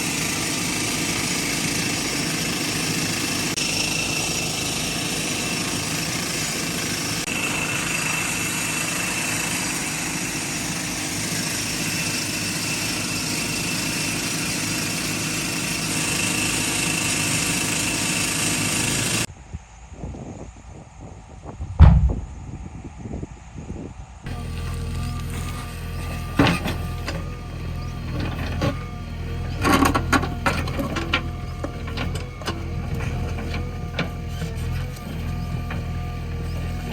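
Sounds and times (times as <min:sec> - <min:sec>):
diesel engine running: 0:00.0 - 0:19.3, 0:24.3 - 0:36.9
loud thump: 0:21.7 - 0:22.4.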